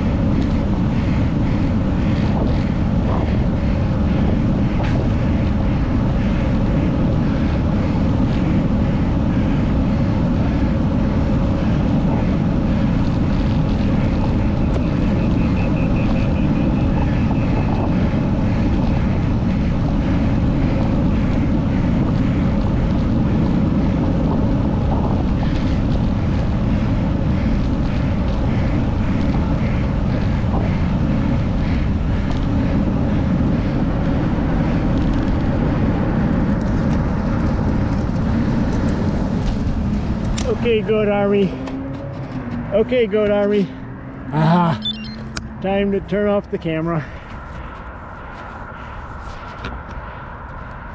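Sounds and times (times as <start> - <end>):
low rumble: 0.0 - 50.9
heavy labored breathing: 47.0 - 50.9.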